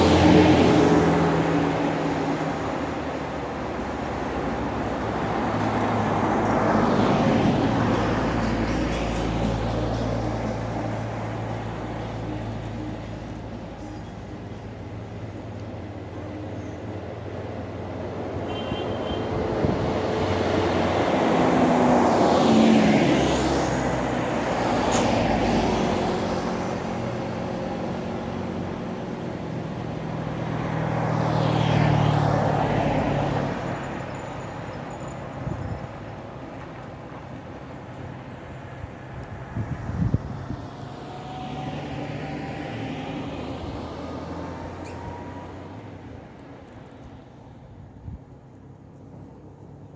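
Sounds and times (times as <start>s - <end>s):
road traffic rumble: 0.0s - 49.9s
vehicle passing by: 19.4s - 33.9s, 39.0s - 46.8s.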